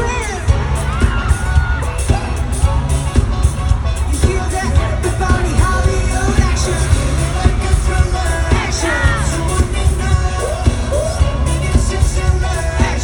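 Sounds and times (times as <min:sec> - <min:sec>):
heavy bass beat: 0:00.0 - 0:13.0
pop song over speakers: 0:00.0 - 0:13.0
person singing: 0:04.0 - 0:13.0.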